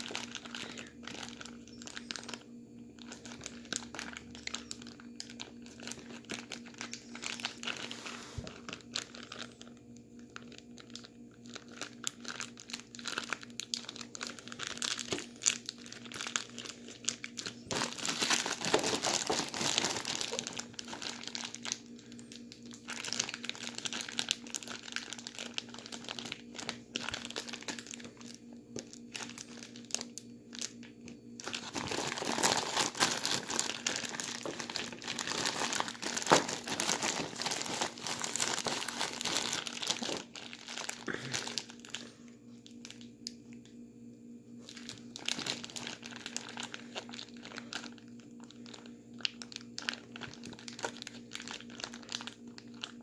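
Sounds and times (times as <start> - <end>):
plastic bag crinkling: 0.0 - 43.8, 44.6 - 53.0
ice and salt crunching: 10.3 - 30.8, 31.4 - 42.0.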